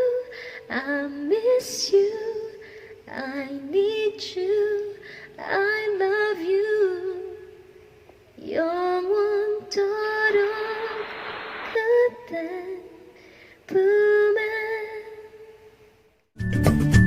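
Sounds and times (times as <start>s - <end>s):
woman singing a cappella: 0.0s - 7.8s, 8.4s - 15.8s
hiss: 9.8s - 13.4s.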